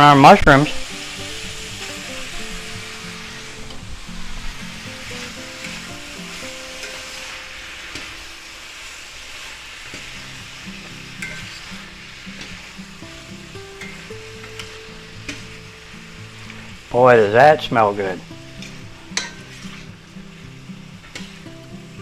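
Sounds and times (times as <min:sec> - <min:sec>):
vegetables sizzling in a skillet: 0:00.0 - 0:22.0.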